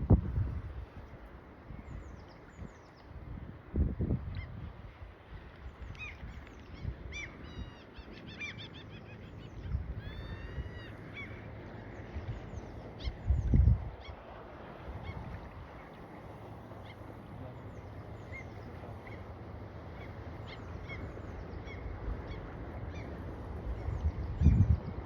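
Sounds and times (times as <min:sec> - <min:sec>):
birds chirping: 0:16.6 - 0:23.2.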